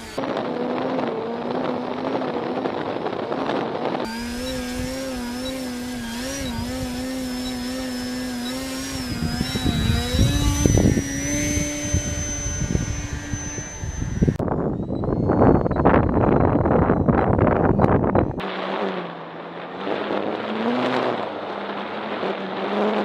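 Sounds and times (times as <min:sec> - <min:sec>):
model airplane engine buzzing: 0:00.0 - 0:23.0
wind buffeting microphone: 0:00.0 - 0:23.0.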